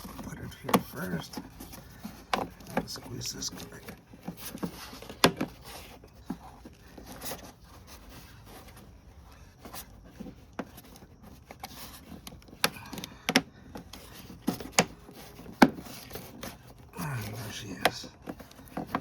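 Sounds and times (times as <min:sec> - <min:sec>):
clicks and knocks of car parts: 0:00.0 - 0:03.0, 0:04.2 - 0:07.1, 0:10.1 - 0:16.6.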